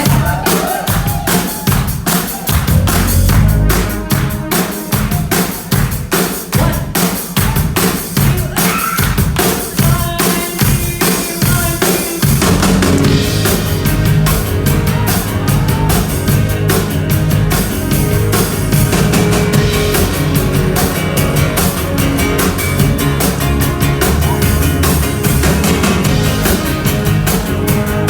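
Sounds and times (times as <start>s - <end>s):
live band playing: 0.0s - 8.3s, 9.2s - 28.0s.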